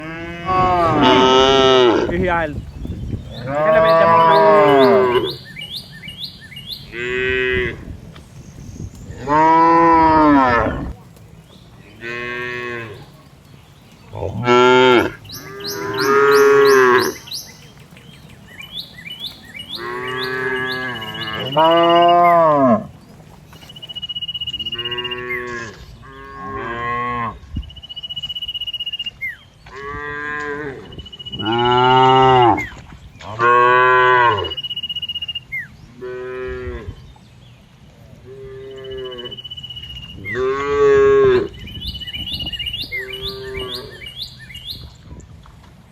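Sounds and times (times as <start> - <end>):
cows mooing: 0.0 - 2.5, 3.3 - 5.5, 6.8 - 8.0, 9.1 - 11.0, 11.8 - 13.4, 14.0 - 23.0, 24.6 - 27.4, 29.7 - 34.6, 38.2 - 39.4, 40.3 - 41.6, 42.7 - 44.2.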